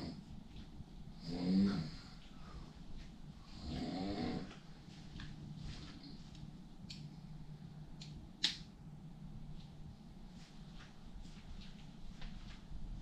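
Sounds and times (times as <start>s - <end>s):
steady low hum: 0.0s - 13.0s
man snoring: 1.2s - 2.2s, 3.5s - 4.5s.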